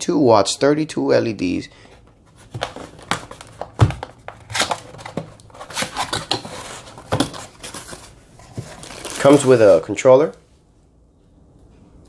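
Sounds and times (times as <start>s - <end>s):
plastic and cardboard crinkling: 1.9s - 10.4s.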